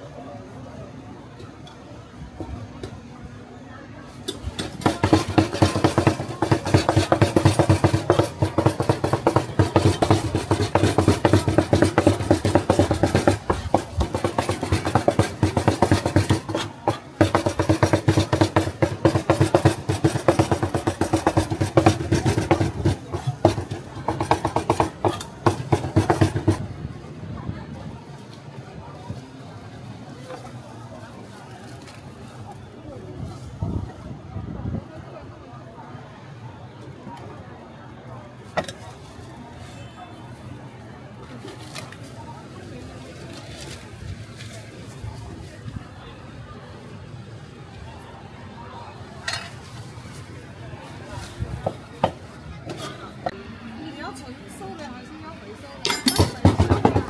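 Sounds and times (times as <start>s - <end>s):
cleaver chopping meat on wood: 4.6s - 26.6s.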